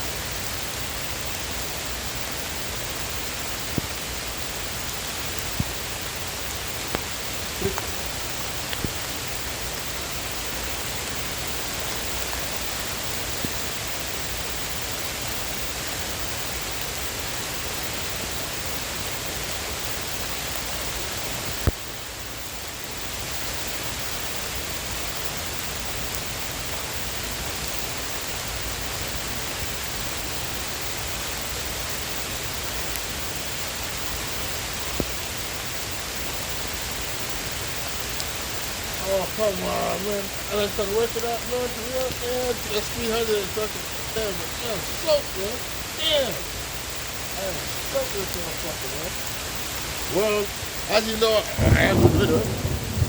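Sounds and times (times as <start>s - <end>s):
heavy rain hissing: 0.0s - 53.0s.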